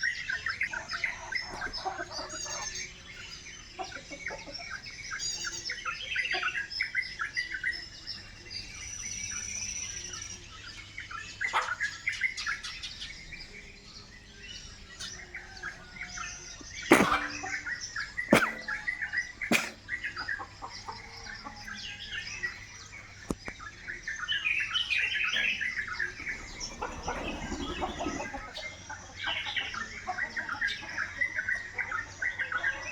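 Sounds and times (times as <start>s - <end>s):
birds chirping: 0.0s - 32.9s
sharp knocks: 16.9s - 17.7s, 19.5s - 19.8s.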